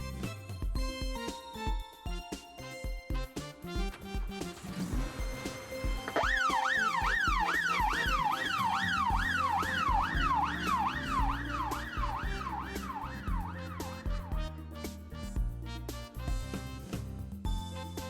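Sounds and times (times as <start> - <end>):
background music with steady beat: 0.0 - 18.0
siren yelping: 6.0 - 14.3.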